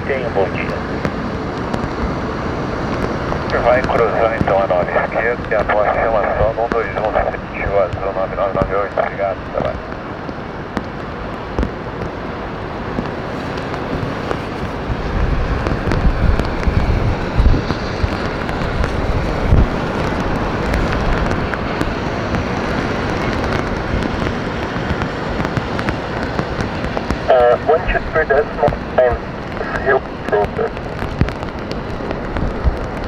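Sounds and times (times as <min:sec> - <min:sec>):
rain hissing: 0:00.0 - 0:33.0
ticks of raindrops: 0:00.0 - 0:33.0
wind buffeting microphone: 0:00.0 - 0:33.0.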